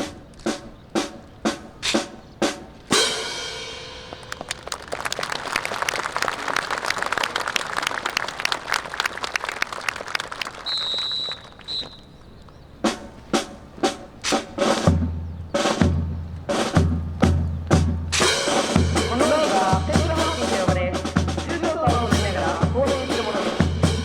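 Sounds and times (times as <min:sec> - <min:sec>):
marching drum cadence: 0:00.0 - 0:05.1, 0:09.8 - 0:24.0
crowd applause: 0:04.1 - 0:12.3
short high whistle: 0:10.6 - 0:12.1.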